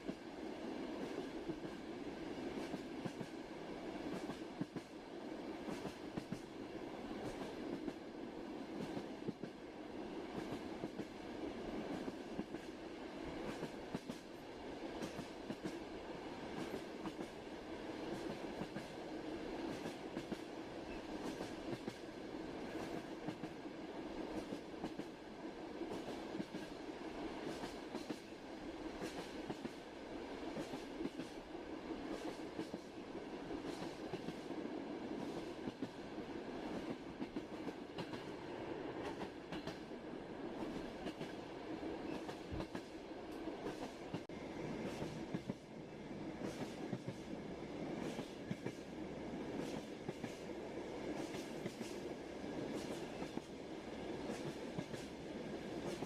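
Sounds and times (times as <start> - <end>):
train rumbling on rails: 0.0 - 56.0.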